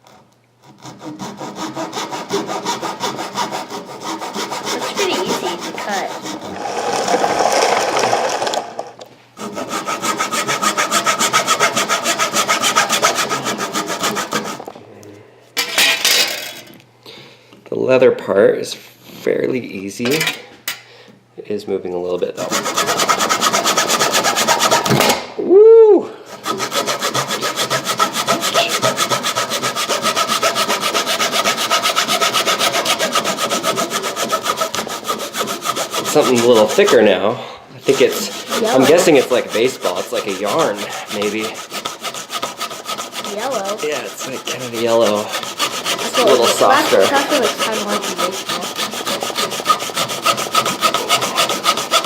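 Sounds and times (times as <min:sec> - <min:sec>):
hand saw cutting leather: 0:00.0 - 0:08.6, 0:09.4 - 0:14.7, 0:22.4 - 0:25.1, 0:26.3 - 0:37.2, 0:37.8 - 0:52.0.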